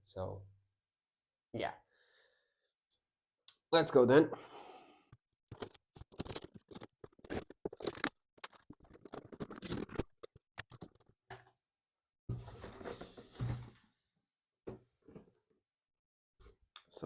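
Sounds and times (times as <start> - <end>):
cardboard and tape tearing: 5.5 - 10.4
plastic packing crinkling: 5.5 - 11.1.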